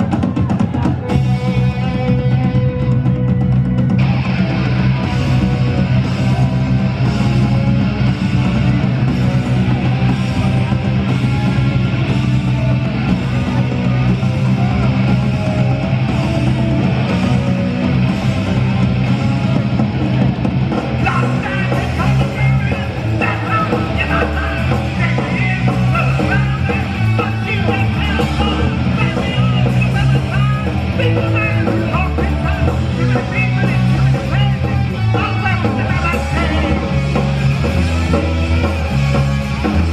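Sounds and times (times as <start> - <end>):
punk rock band playing: 0.0 - 39.9.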